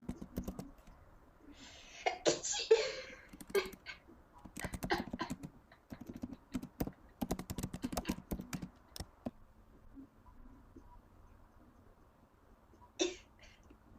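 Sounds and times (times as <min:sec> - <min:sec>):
typing on computer keyboard: 0:00.0 - 0:00.9, 0:03.3 - 0:09.4.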